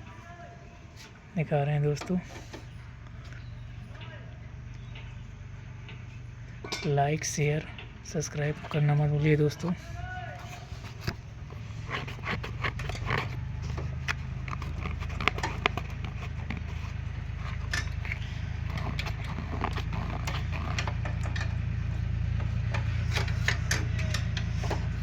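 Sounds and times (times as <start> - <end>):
steady low hum: 0.0 - 25.0
metal tools clinking and scraping: 5.9 - 21.9, 22.6 - 25.0.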